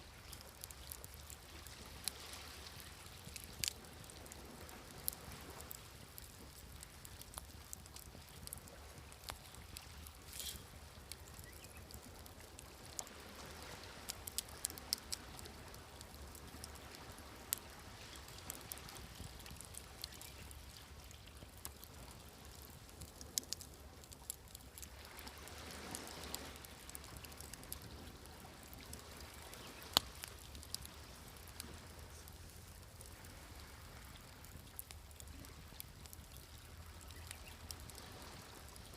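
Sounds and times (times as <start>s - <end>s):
wood fire crackling and popping: 0.0s - 38.9s
sea waves: 24.8s - 34.6s, 37.8s - 38.8s.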